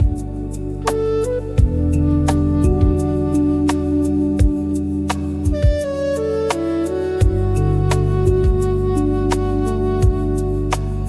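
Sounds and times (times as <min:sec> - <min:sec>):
soft low drum beats: 0:00.0 - 0:06.0, 0:07.2 - 0:09.0, 0:10.0 - 0:11.0
ambient meditation music: 0:00.0 - 0:11.0.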